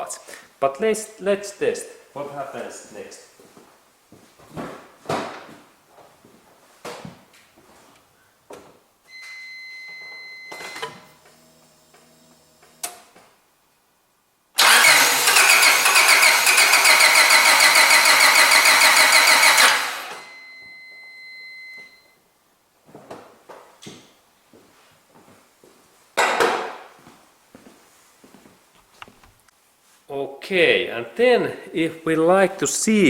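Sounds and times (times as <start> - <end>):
car engine cranking: 14.6 - 20.3.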